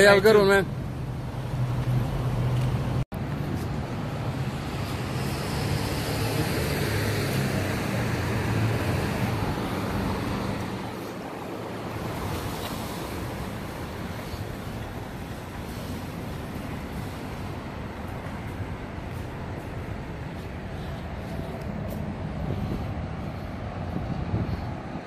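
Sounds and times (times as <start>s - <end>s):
wind on microphone: 20.6s - 25.0s.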